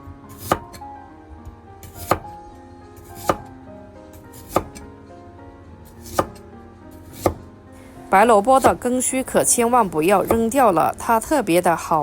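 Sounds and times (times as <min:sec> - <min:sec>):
knife chopping on cutting board: 0:00.3 - 0:00.8, 0:01.8 - 0:02.4, 0:03.0 - 0:03.5, 0:04.2 - 0:04.9, 0:05.9 - 0:06.4, 0:07.0 - 0:07.5, 0:08.6 - 0:08.9, 0:10.2 - 0:10.6.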